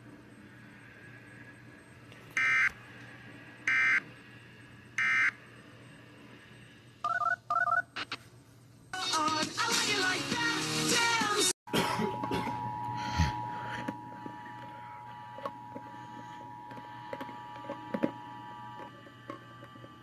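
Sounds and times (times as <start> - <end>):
screechy data tone bursts: 5.0 - 5.5
music: 9.0 - 11.6.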